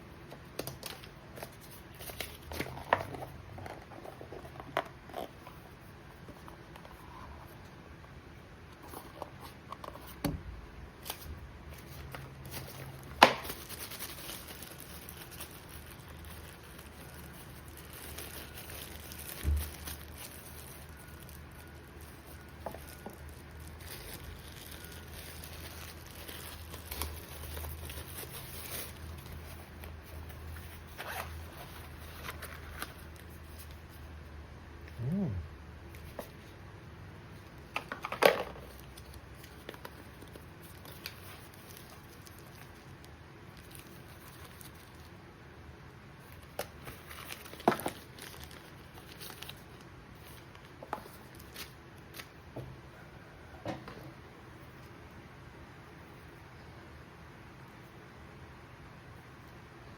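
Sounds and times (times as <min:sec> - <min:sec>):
packaging rustling: 0:11.0 - 0:34.0, 0:46.2 - 0:52.3.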